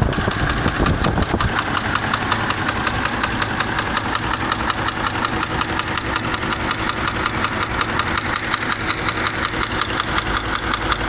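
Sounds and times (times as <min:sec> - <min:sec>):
car engine idling with knocking: 0:00.0 - 0:11.0.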